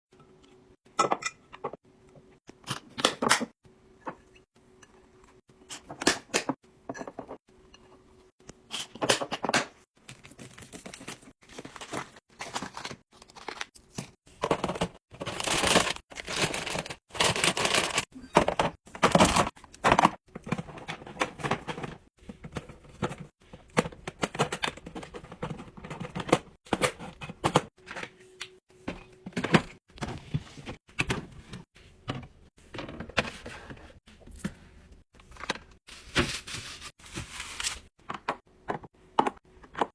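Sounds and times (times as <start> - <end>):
plastic packaging crinkling: 15.2 - 18.0.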